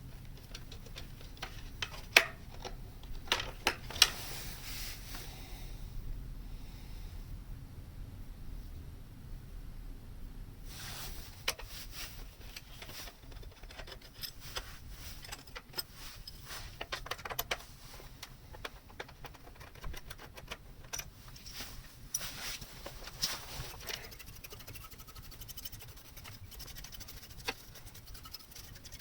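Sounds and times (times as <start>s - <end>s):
plastic parts clicking and scratching: 0.0s - 4.2s, 11.4s - 29.0s.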